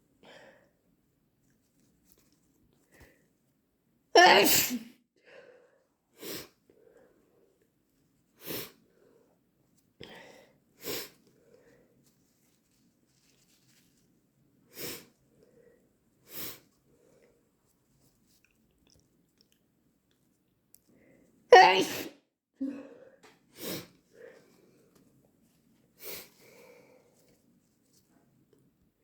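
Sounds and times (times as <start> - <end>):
person sneezing: 4.2 - 4.9, 21.5 - 22.8.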